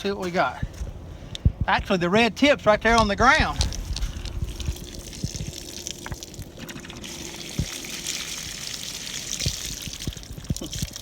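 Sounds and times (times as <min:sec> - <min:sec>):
water pouring and splashing: 0:03.6 - 0:11.0.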